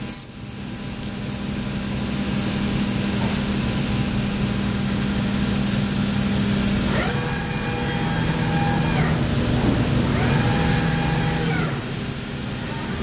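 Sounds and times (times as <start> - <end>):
milling machine humming: 0.0 - 13.0
machine whine rising and falling: 6.5 - 13.0.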